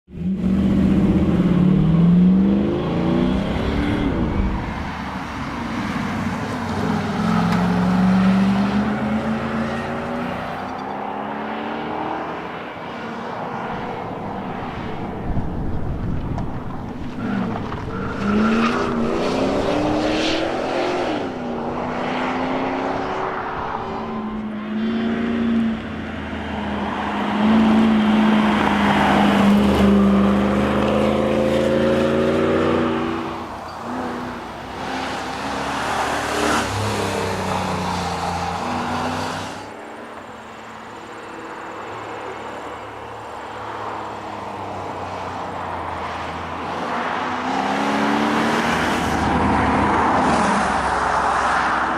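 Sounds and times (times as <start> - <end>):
car engine revving: 0.1 - 12.6, 13.7 - 39.7.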